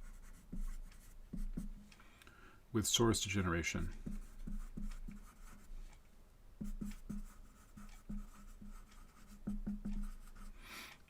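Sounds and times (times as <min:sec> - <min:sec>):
pen writing on a surface: 0:00.0 - 0:01.9, 0:03.9 - 0:05.9, 0:06.6 - 0:10.5.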